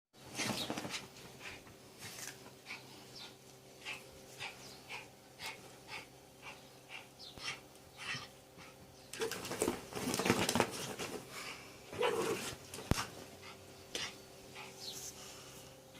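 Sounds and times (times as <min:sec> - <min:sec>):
dog panting: 0:02.6 - 0:08.9.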